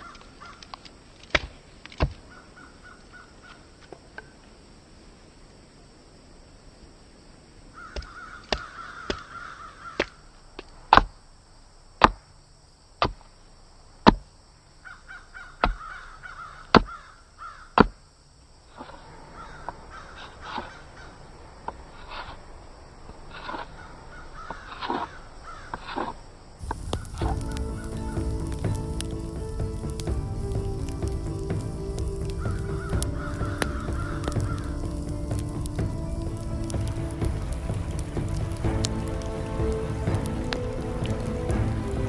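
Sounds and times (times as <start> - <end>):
crows cawing: 0.0 - 0.8, 7.8 - 10.2, 14.8 - 17.9, 19.3 - 21.3, 23.7 - 26.0, 26.7 - 38.6.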